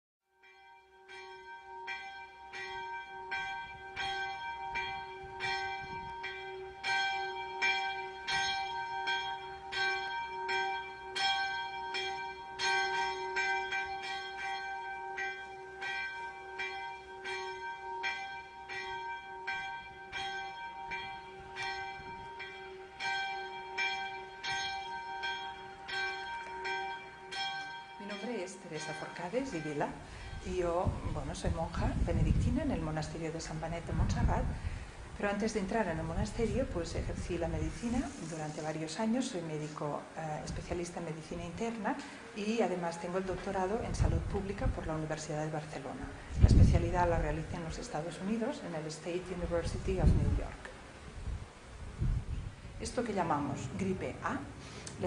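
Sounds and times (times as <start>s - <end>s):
church bells ringing: 0.4s - 34.7s.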